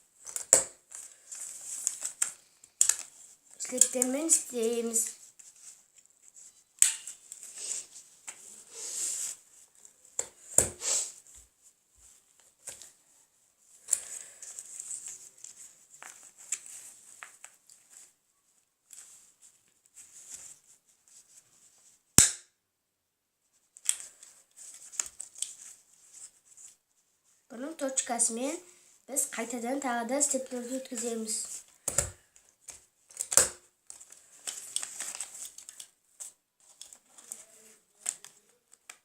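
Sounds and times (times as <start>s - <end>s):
paper rustling: 0.2s - 10.2s, 13.8s - 18.2s, 30.2s - 39.0s.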